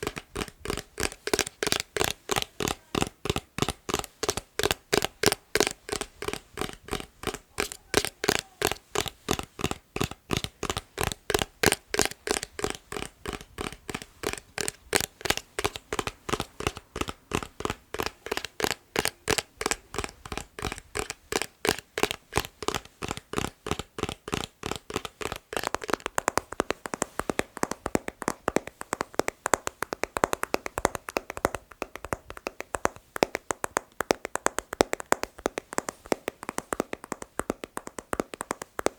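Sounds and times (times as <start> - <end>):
tapping on hard object: 0.0 - 38.9.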